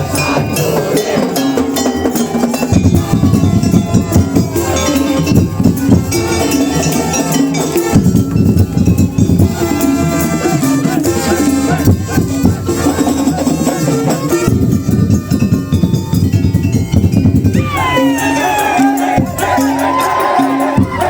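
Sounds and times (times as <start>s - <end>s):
ensemble drumming: 14.5s - 21.0s
melodic lines: 17.5s - 21.0s.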